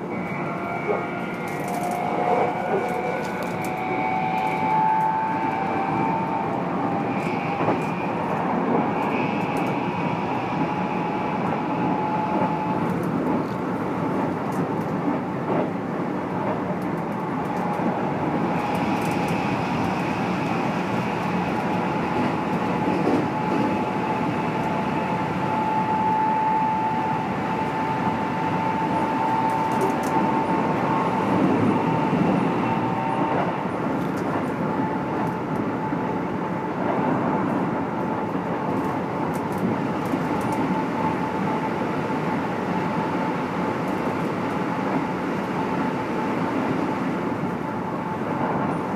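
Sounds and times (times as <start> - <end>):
train traction motor whine: 0.0 - 14.7, 16.4 - 48.9
wheels rumbling on rail: 0.0 - 48.9
rail-joint clicks: 0.2 - 5.7, 6.5 - 10.8, 11.4 - 15.8, 16.4 - 24.8, 27.6 - 36.0, 38.2 - 41.2.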